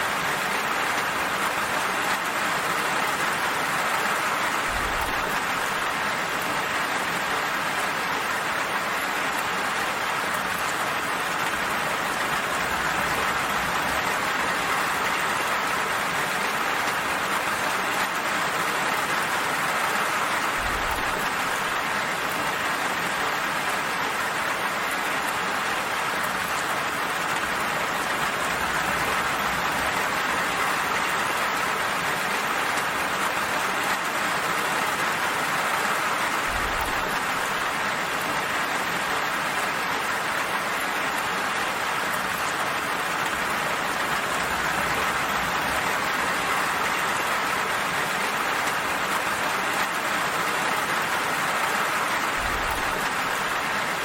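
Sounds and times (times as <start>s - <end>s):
steady rainfall: 0.0s - 54.0s.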